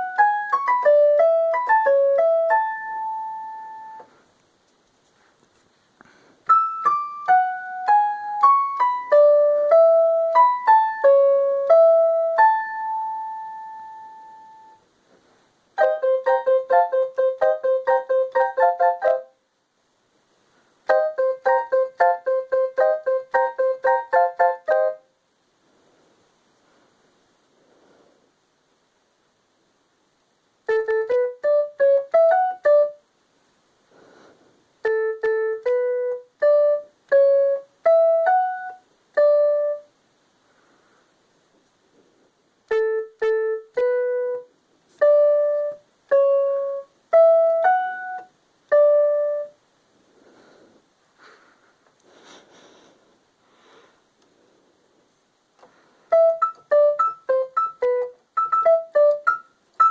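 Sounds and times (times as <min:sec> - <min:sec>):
electronic keyboard melodies: 0:00.0 - 0:04.2, 0:06.5 - 0:14.8, 0:15.8 - 0:19.3, 0:20.9 - 0:25.1, 0:30.7 - 0:33.0, 0:34.8 - 0:39.9, 0:42.7 - 0:49.6, 0:56.1 - 0:59.9
faint rustling: 0:04.0 - 0:06.5, 0:40.4 - 0:42.6, 0:49.8 - 0:56.2.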